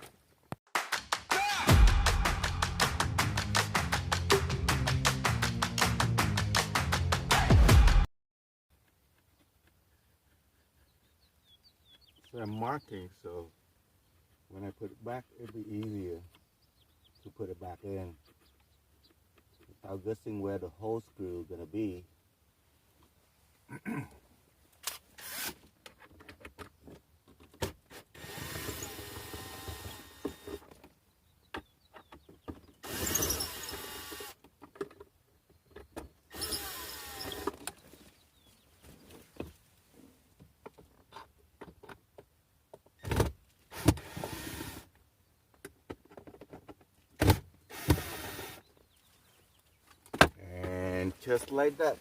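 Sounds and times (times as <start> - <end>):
cordless drill whirring: 25.2 - 25.6, 28.2 - 30.6, 32.8 - 34.4, 36.3 - 37.6, 47.7 - 48.6.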